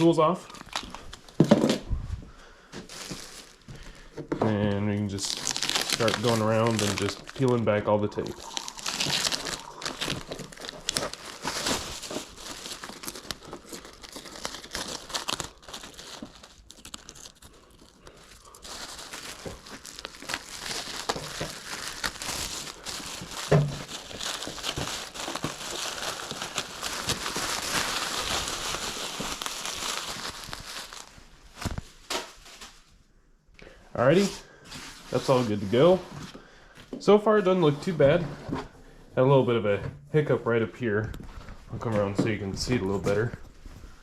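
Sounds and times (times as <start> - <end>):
plastic sheet crinkling: 0.0 - 1.4, 2.8 - 33.0, 34.1 - 36.2.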